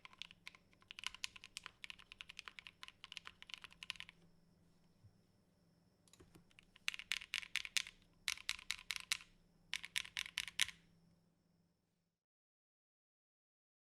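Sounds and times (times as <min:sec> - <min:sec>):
typing on mechanical keyboard: 0:00.0 - 0:04.2, 0:06.1 - 0:10.8.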